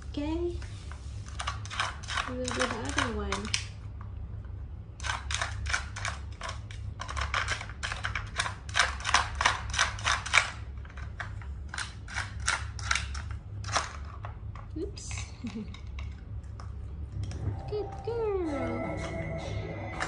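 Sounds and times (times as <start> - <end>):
steady low hum: 0.0 - 20.0
plastic toy clicking and clattering: 1.3 - 3.8, 5.0 - 16.7.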